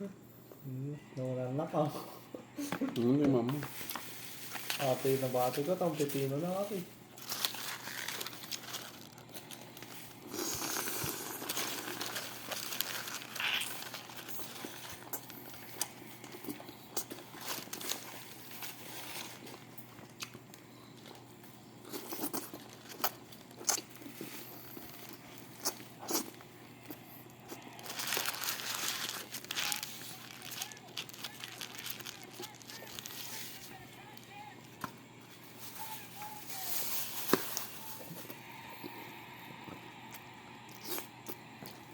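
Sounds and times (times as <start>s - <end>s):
crunchy bites and chewing: 7.2s - 35.1s.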